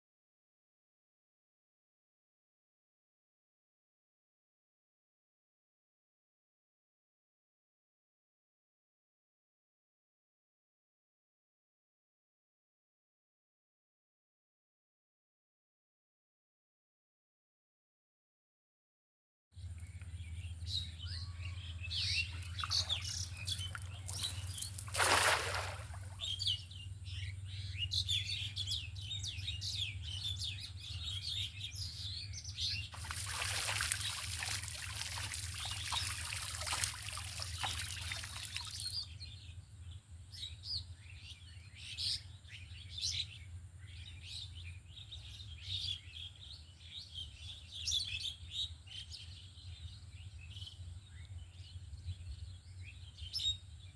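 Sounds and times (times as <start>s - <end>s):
small birds chirping: 19.6s - 53.9s.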